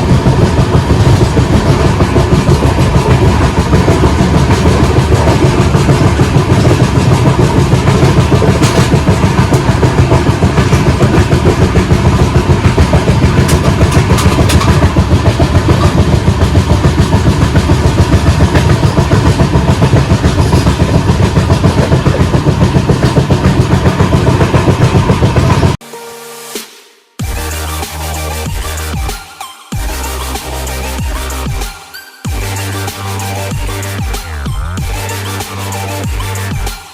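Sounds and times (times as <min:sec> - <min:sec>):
flat wheel pounding beat: 0:00.0 - 0:25.8, 0:27.2 - 0:36.9
rumble of passing train: 0:00.0 - 0:25.8.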